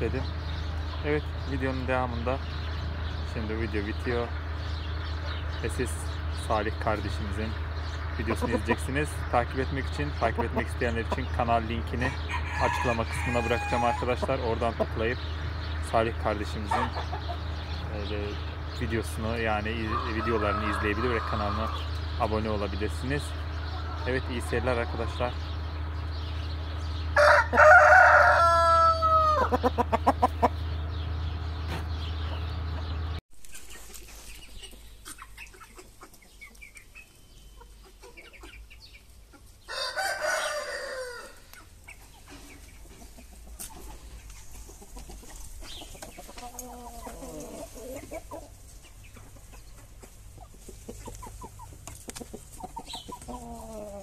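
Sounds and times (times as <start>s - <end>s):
chicken clucking: 0.0s - 30.8s, 31.6s - 54.0s
rooster crowing: 12.2s - 14.1s, 19.9s - 21.8s, 27.2s - 29.6s, 39.7s - 41.5s.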